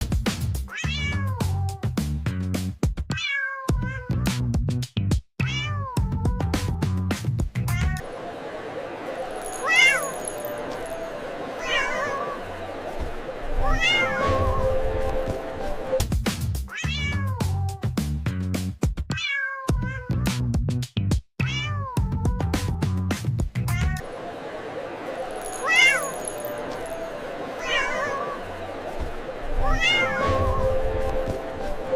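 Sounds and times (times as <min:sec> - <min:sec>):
cat meowing: 0:00.7 - 0:01.7, 0:03.1 - 0:04.2, 0:05.4 - 0:06.4, 0:13.7 - 0:14.2, 0:16.7 - 0:17.6, 0:19.1 - 0:20.3, 0:21.4 - 0:22.4, 0:23.7 - 0:24.0, 0:27.6 - 0:28.3, 0:29.6 - 0:30.2
dance music: 0:29.3 - 0:31.9.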